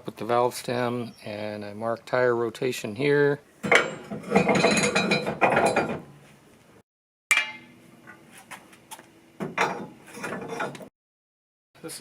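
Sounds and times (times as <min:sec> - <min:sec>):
metal parts clanking: 0:03.6 - 0:06.0
metal clattering: 0:03.6 - 0:06.1
sharp ringing metal strike: 0:07.3 - 0:07.8.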